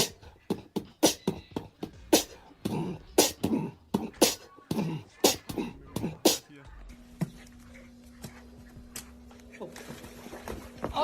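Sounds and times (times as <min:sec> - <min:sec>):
mouth-made percussive beat: 0:00.0 - 0:06.5.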